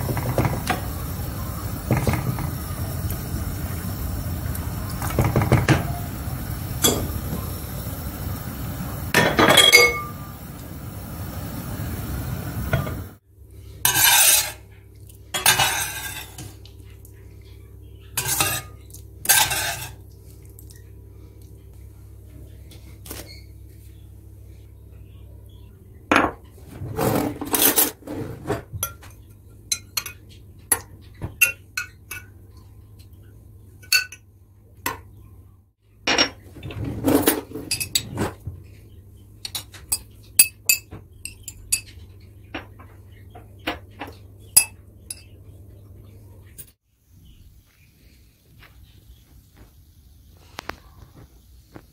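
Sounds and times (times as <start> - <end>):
cutlery clinking on plates: 9.2 - 10.1, 18.2 - 20.0.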